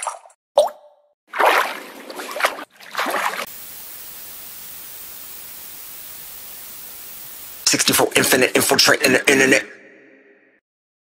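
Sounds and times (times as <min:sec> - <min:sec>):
splashy noise bursts: 0:01.3 - 0:04.4
steady white noise hiss: 0:03.4 - 0:08.4.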